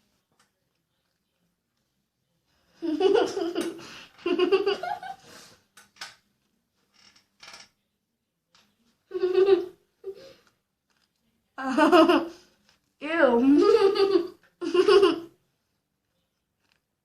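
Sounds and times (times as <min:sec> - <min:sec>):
girl laughing: 0:02.8 - 0:05.2, 0:13.4 - 0:15.3.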